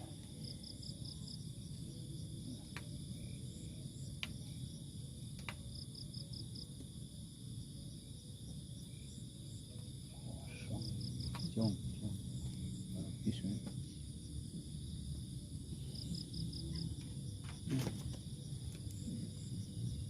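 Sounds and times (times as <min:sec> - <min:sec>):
insect chorus: 0:00.0 - 0:20.0
low background rumble: 0:00.0 - 0:20.0
faint ticks: 0:02.6 - 0:03.0, 0:04.0 - 0:04.6, 0:05.3 - 0:05.9.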